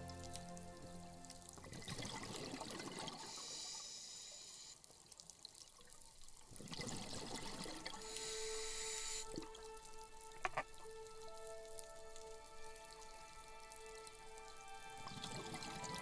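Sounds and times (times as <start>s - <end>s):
regulator inhalation hiss: 3.2s - 4.8s, 7.9s - 9.4s
gurgling exhaled bubbles: 6.5s - 7.9s.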